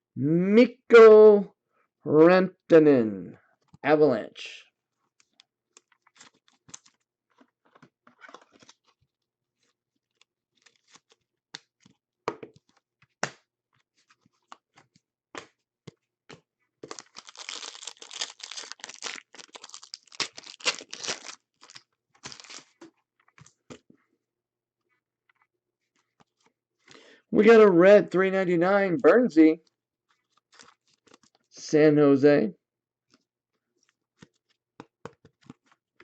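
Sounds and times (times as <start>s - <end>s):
foil pack tearing and crinkling: 16.8s - 22.7s.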